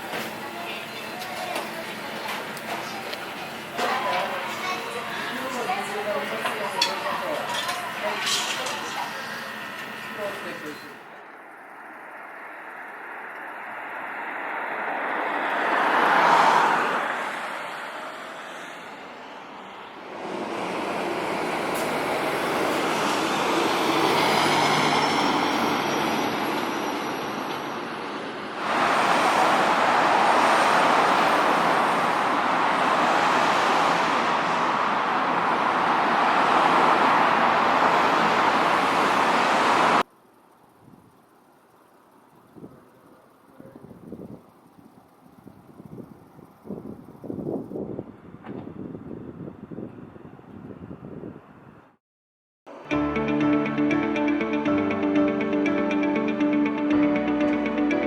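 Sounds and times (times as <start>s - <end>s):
road traffic noise: 0.0s - 52.0s, 52.7s - 58.0s
vehicle passing by: 11.8s - 26.4s, 28.5s - 40.0s.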